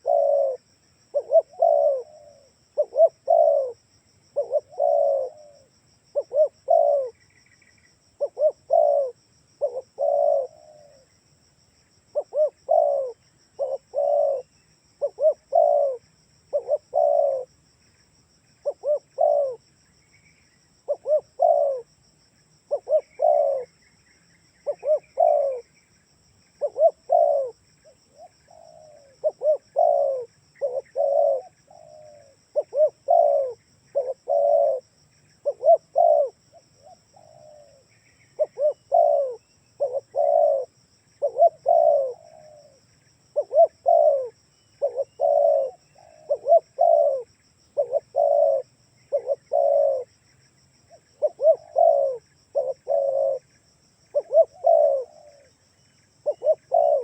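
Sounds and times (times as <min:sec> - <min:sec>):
dove cooing: 0:00.0 - 0:07.4, 0:08.1 - 0:11.1, 0:12.1 - 0:17.6, 0:18.6 - 0:19.7, 0:20.8 - 0:21.9, 0:22.7 - 0:23.8, 0:24.6 - 0:25.8, 0:26.6 - 0:50.1, 0:50.9 - 0:55.6, 0:56.2 - 0:57.0
faint small bird chirps: 0:00.0 - 0:11.3, 0:11.9 - 0:21.9, 0:22.6 - 0:57.0.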